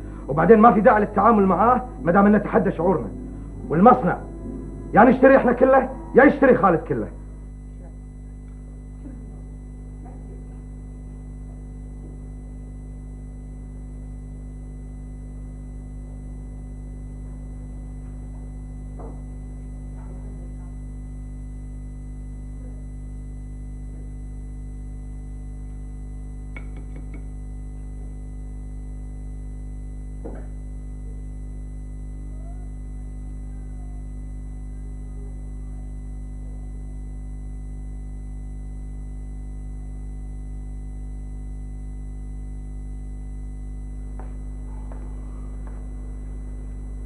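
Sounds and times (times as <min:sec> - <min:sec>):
synthesizer drone: 0:00.0 - 0:08.3.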